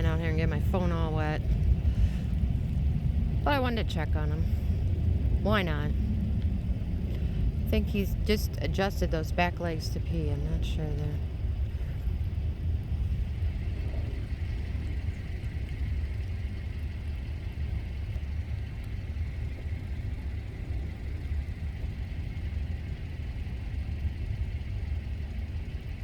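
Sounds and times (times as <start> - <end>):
low rumble: 0.0 - 26.0.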